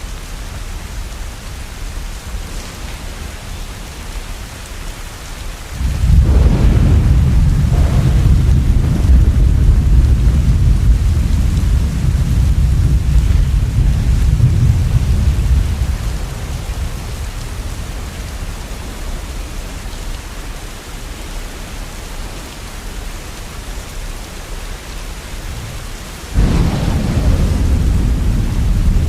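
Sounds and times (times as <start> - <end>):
steady rain: 0.0 - 29.0
thunder rumbling: 5.7 - 20.2, 25.2 - 29.0
thunder crack: 5.8 - 18.0, 25.5 - 29.0.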